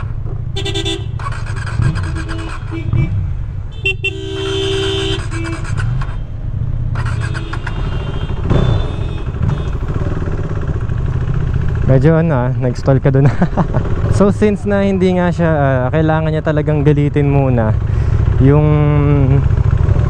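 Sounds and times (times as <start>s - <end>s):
engine and traffic rumble: 0.0s - 20.0s
vehicle horn honking: 0.5s - 6.3s, 7.0s - 10.0s.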